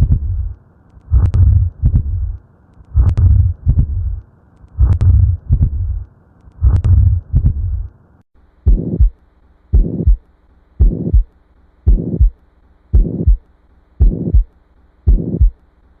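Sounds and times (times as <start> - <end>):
heart murmur: 0.0 - 2.4, 3.0 - 4.2, 4.8 - 6.0, 6.6 - 7.9, 8.7 - 9.2, 9.8 - 10.2, 10.8 - 11.3, 11.9 - 12.4, 13.0 - 13.4, 14.0 - 14.5, 15.1 - 15.6
heartbeat thumps: 0.0 - 2.4, 3.0 - 4.2, 4.8 - 7.9, 8.7 - 11.3, 11.9 - 13.4, 14.0 - 14.5, 15.1 - 15.6.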